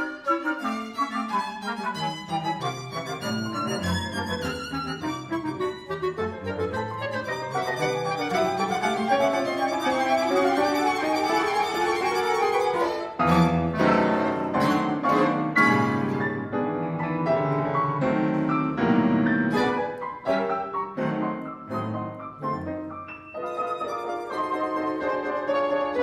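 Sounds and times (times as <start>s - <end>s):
cello: 0.0s - 26.0s
violin: 0.0s - 26.0s.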